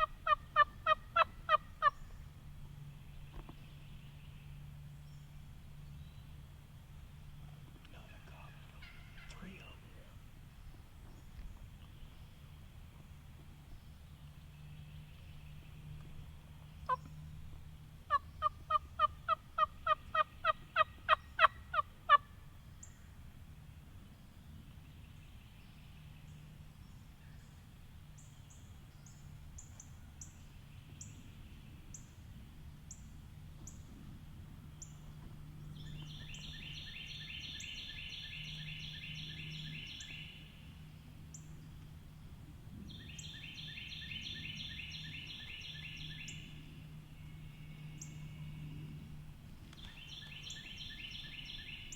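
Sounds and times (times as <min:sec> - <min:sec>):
turkey yelping: 0:00.0 - 0:02.0.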